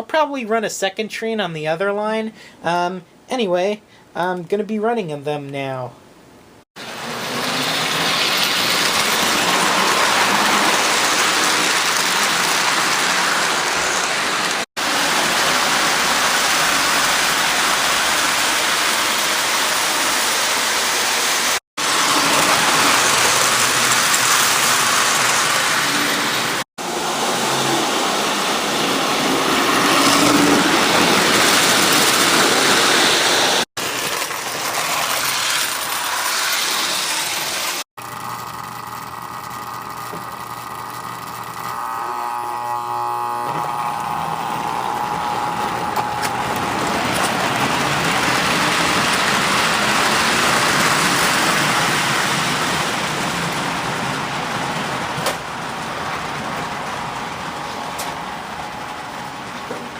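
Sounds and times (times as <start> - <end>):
model trains rumbling on track: 6.8 - 37.8, 43.6 - 59.9.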